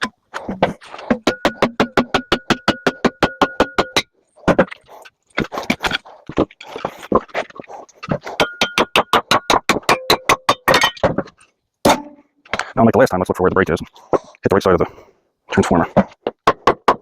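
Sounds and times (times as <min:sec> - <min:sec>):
hammer striking metal: 0:01.2 - 0:04.1, 0:08.4 - 0:11.0, 0:11.9 - 0:12.2.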